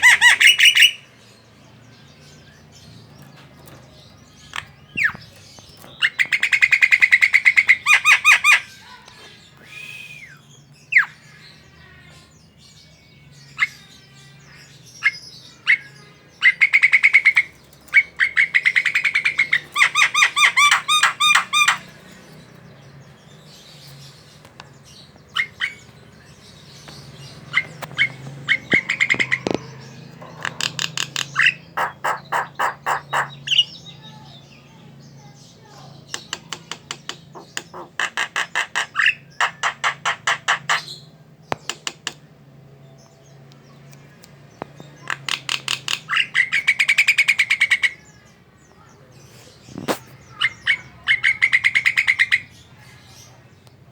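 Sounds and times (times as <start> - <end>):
myna chattering: 24.9 - 34.3.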